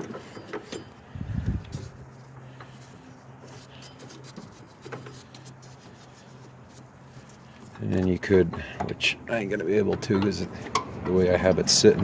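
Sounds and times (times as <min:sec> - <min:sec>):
rubbing and handling noises: 0:00.0 - 0:08.2.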